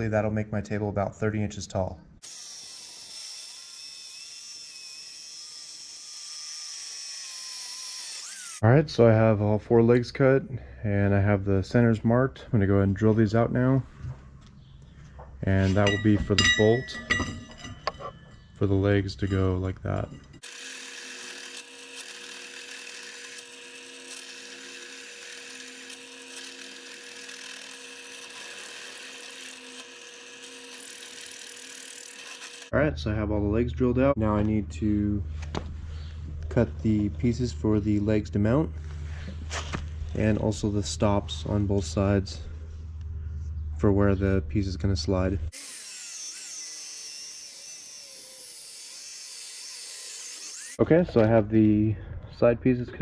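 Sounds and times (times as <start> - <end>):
electric drill boring steel: 2.2 - 8.6, 20.4 - 32.7, 45.5 - 50.8.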